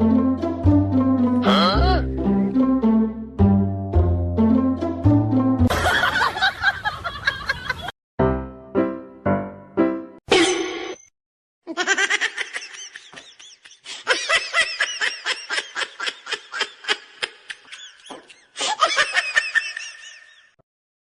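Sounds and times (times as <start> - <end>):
person laughing high-pitched: 11.7 - 20.2.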